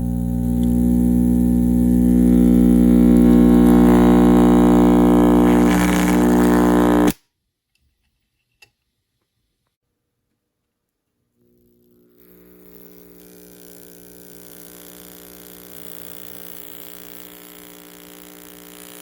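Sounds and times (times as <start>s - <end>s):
loud droning tone: 0.0s - 7.1s
faint click: 0.6s - 0.8s.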